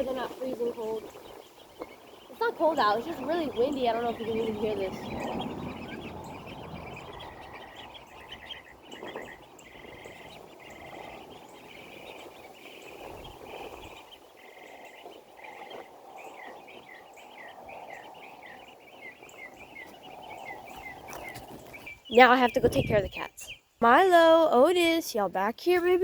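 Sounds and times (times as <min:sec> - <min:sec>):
wind noise: 0:00.0 - 0:23.5
ducklings peeping and chirping: 0:00.0 - 0:26.0.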